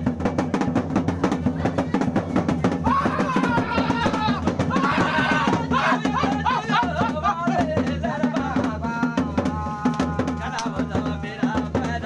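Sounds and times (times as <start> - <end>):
steady drum beat: 0.0 - 12.0
person singing: 2.7 - 12.0.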